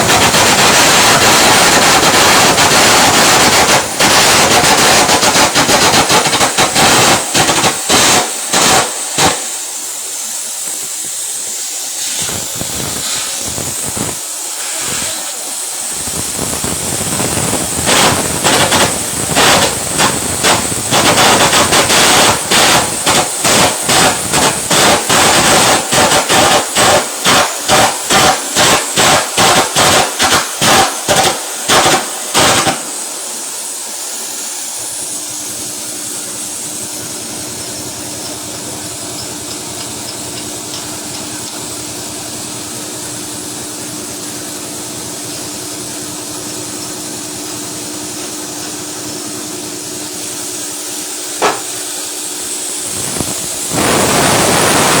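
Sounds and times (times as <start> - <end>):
rapid hammer blows: 0.0 - 9.9, 14.8 - 33.1, 51.4 - 52.1
steady hiss: 0.0 - 55.0.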